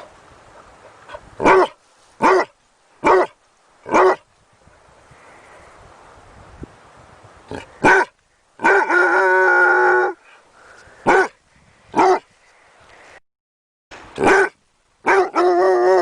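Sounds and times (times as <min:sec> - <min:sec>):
dog barking: 0:01.4 - 0:04.2, 0:07.8 - 0:09.0, 0:11.0 - 0:11.4, 0:12.0 - 0:12.2, 0:14.2 - 0:15.4.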